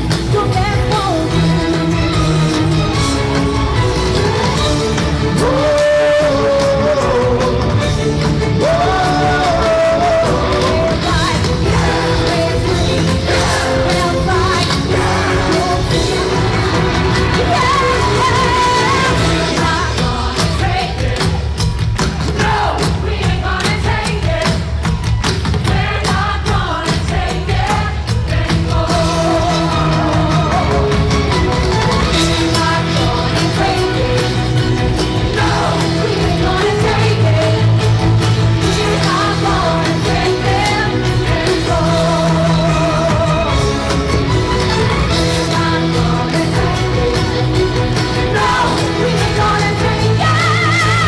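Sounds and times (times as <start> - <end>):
drumming: 0.0 - 51.0
show music with bass and beat: 0.0 - 51.0
person singing: 3.9 - 21.3, 25.8 - 51.0.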